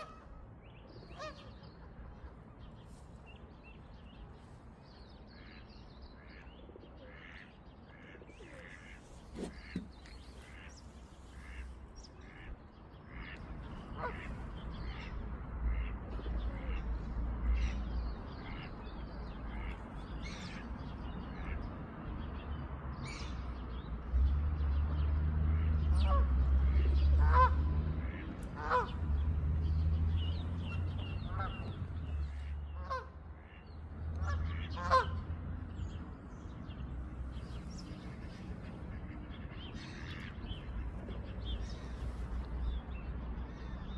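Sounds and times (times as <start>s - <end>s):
small birds chirping: 0.6s - 16.9s, 35.6s - 43.9s
geese honking: 1.1s - 1.6s, 7.0s - 15.1s, 25.6s - 29.3s, 30.4s - 35.4s.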